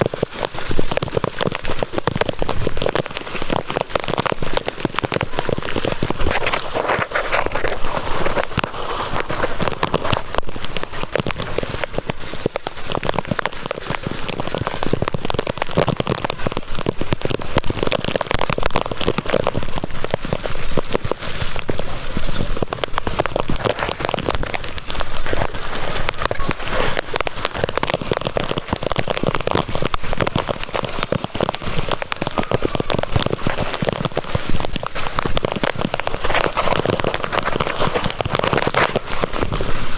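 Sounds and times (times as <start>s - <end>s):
heavy rain falling: 0.0s - 39.9s
sharp raindrop hits: 0.0s - 39.9s.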